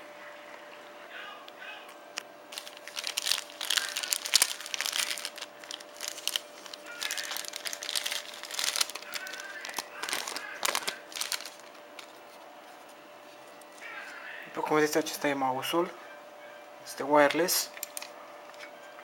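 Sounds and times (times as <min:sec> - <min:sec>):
plastic and cardboard crinkling: 0:02.5 - 0:13.0.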